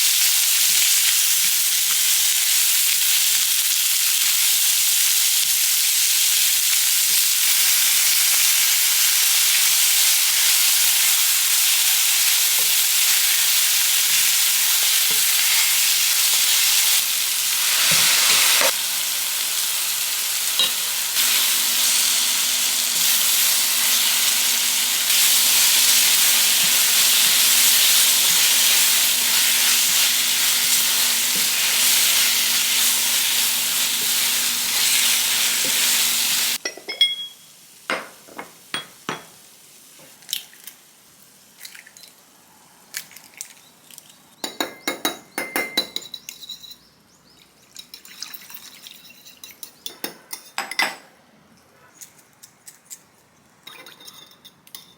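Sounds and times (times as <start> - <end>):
food sizzling in a pan: 0.0 - 41.5.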